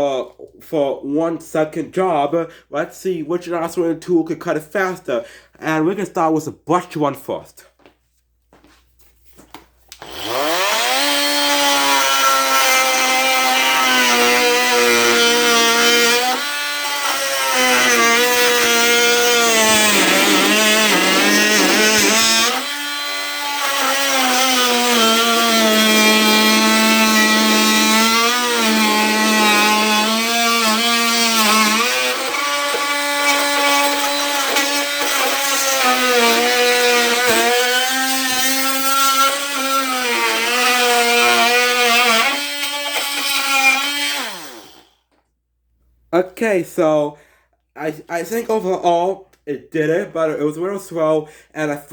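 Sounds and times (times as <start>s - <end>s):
blade cutting through wood: 9.9s - 45.0s.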